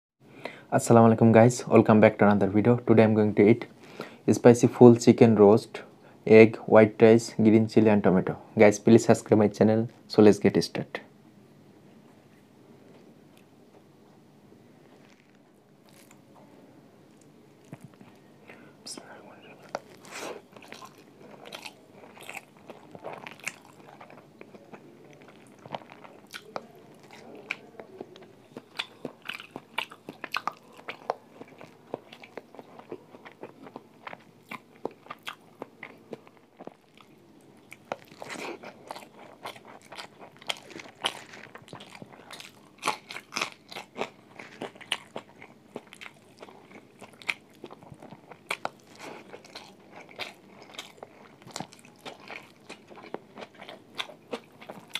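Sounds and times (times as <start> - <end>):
person chewing crunchy food: 15.0 - 16.2, 17.1 - 18.2, 19.5 - 54.9.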